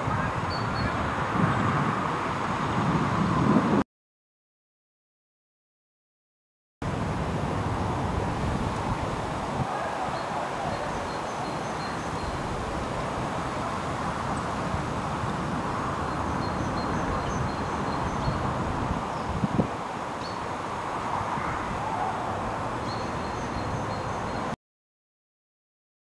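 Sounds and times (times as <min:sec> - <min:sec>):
distant road traffic: 0:06.8 - 0:24.6.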